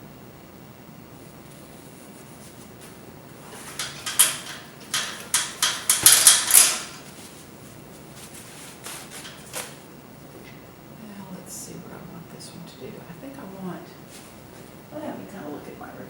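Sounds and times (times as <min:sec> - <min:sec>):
painting gear rattling and clinking: 0:02.8 - 0:07.4
sharp clicks and rattles: 0:03.5 - 0:07.1.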